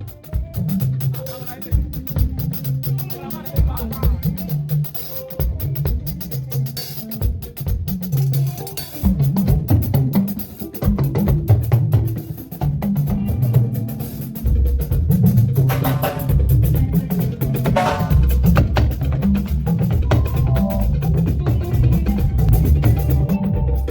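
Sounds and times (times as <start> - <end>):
drums: 0.0 - 23.9
hand percussion: 0.0 - 23.9
moving bass line: 15.7 - 23.8.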